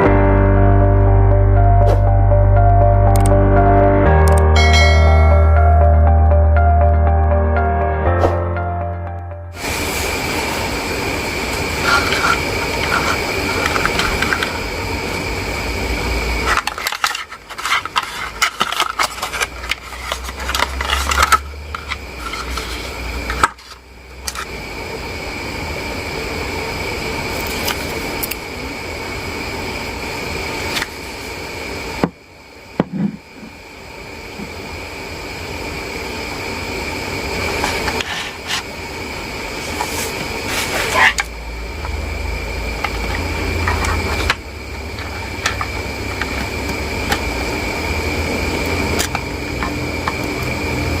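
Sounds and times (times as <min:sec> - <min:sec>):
background hum with high tone: 0:00.0 - 0:51.0.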